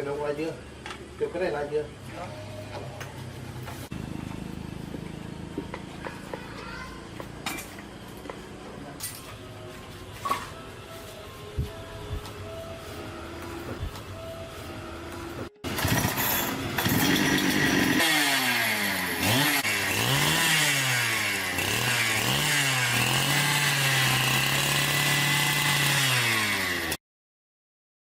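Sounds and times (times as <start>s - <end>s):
steady tones: 11.1s - 18.0s
chainsaw engine revving: 15.0s - 27.0s.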